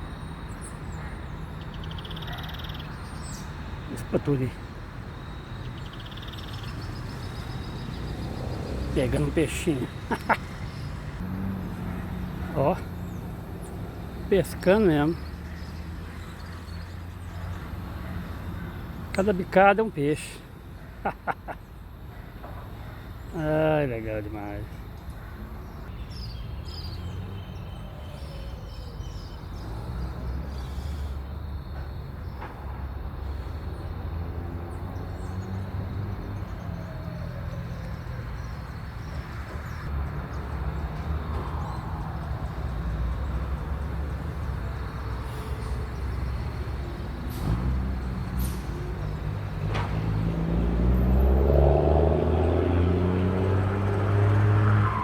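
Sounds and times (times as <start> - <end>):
motor vehicle engine rumbling: 3.0 - 19.7, 28.8 - 54.6.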